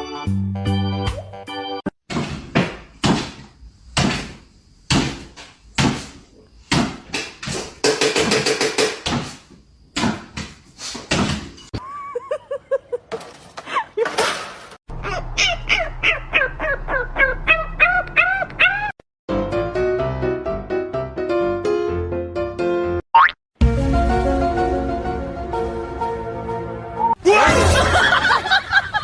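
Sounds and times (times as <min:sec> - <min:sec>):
sharp knocks and thumps: 0:02.1 - 0:11.7.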